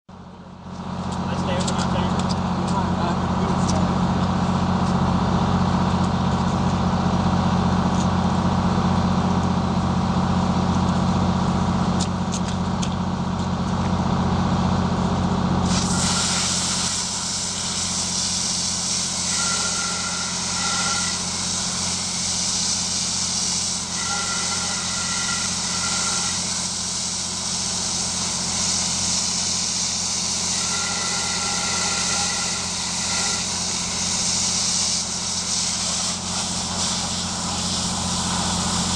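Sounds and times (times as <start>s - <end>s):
heavy vehicle engine running: 0.1s - 38.9s
loud hiss of spray: 15.6s - 38.9s.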